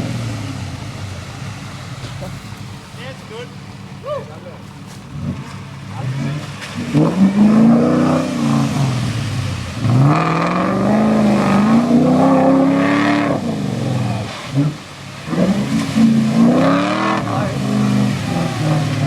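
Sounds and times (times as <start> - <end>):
car engine revving: 0.0 - 19.0.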